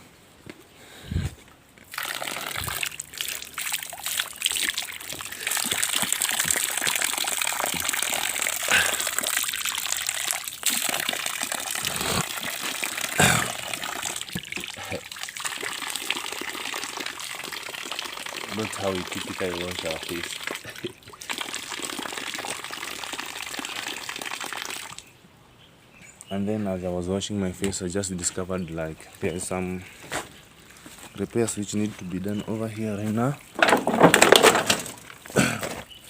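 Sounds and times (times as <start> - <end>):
water running: 1.9 - 25.0
water splashing on face: 1.9 - 25.1.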